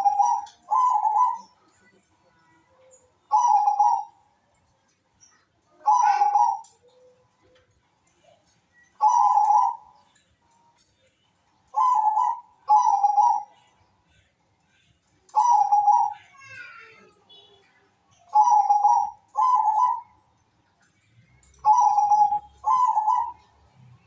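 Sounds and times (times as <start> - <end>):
dove cooing: 0.0 - 1.7, 3.2 - 4.3, 5.8 - 7.6, 9.0 - 10.1, 11.7 - 13.7, 15.3 - 16.5, 18.3 - 20.2, 21.6 - 23.8.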